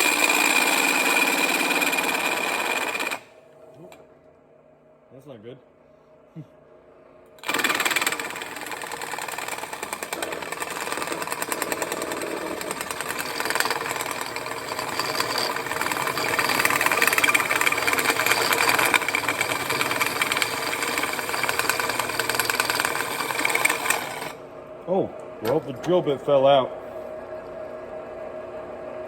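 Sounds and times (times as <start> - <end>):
electric drill cutting metal: 0.0 - 3.3, 7.4 - 24.4.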